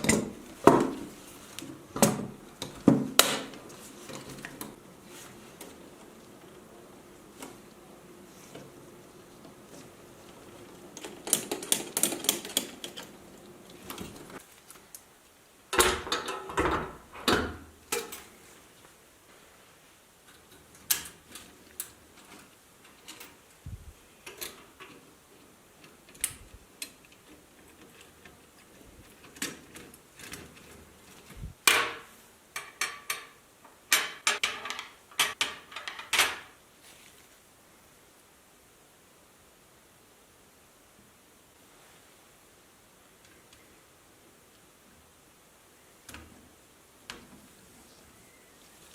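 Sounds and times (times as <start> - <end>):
calculator mechanism clicking: 10.3 - 13.2.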